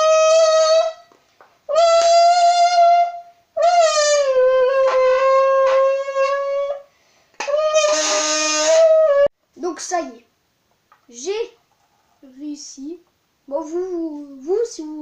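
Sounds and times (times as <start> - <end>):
aluminium can blown like a horn: 0.0 - 9.3.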